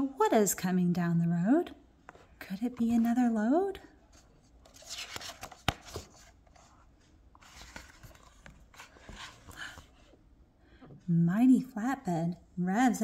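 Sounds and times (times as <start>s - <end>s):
paper pages rustling: 4.1s - 9.8s.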